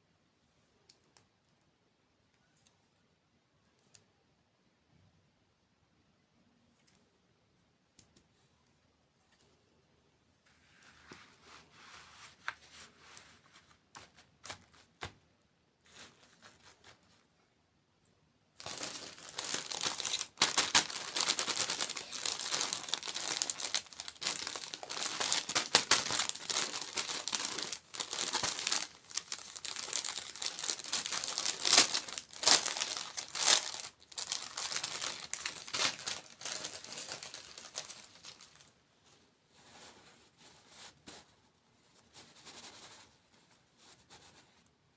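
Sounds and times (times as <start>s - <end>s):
food wrapper crinkling: 18.6s - 38.7s.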